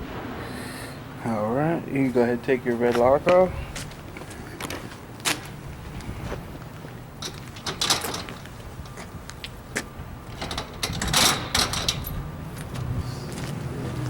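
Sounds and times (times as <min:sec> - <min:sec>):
padlock clicking and rattling: 0:07.2 - 0:09.0, 0:10.3 - 0:12.3.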